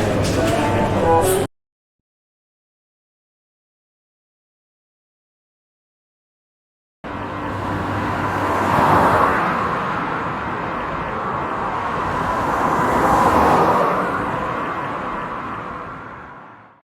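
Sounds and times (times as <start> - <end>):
steady rushing noise: 7.1 - 16.6.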